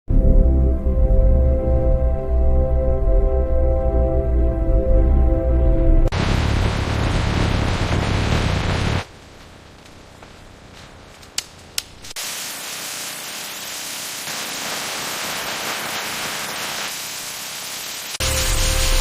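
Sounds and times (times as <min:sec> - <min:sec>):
steady hissing: 0:06.2 - 0:19.0
sharp clicks: 0:11.1 - 0:12.2.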